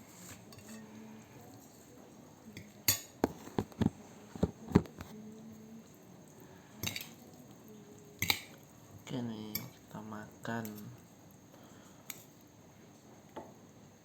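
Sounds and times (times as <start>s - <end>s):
cutlery and dishes clinking: 0.2s - 1.1s, 2.6s - 5.1s, 6.8s - 7.3s, 8.2s - 8.6s, 9.5s - 9.8s.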